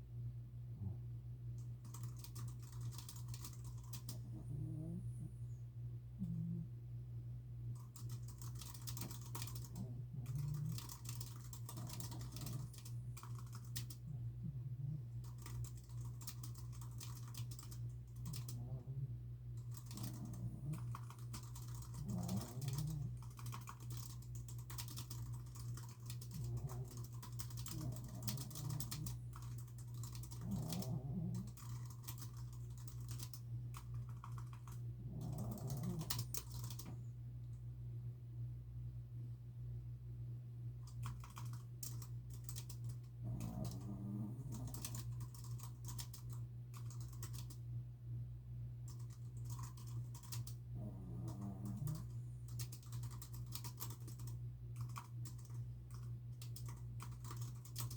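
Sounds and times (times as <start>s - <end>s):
steady low hum: 0.0s - 57.9s
dog snoring: 3.7s - 5.6s, 6.2s - 6.7s, 8.9s - 15.8s, 17.1s - 23.8s, 26.2s - 32.0s, 35.0s - 37.0s, 43.2s - 45.2s, 50.8s - 52.2s.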